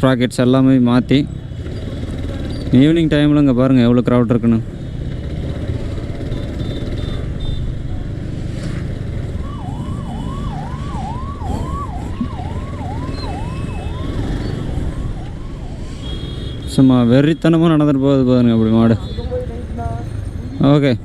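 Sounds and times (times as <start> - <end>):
city street traffic: 0.0 - 21.0
siren swooping: 9.0 - 17.7.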